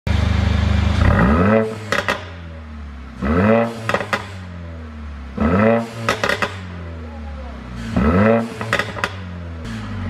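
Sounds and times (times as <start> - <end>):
car engine revving: 0.1 - 10.0
exhaust pops: 1.0 - 2.4, 3.4 - 4.4, 5.6 - 6.8, 7.8 - 9.9.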